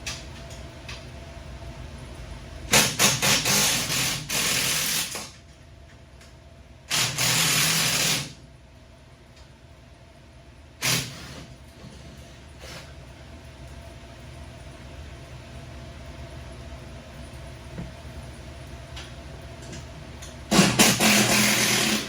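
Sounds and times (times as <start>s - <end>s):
pneumatic air tool: 2.7s - 5.4s, 6.9s - 8.4s, 10.8s - 11.5s, 20.5s - 22.0s.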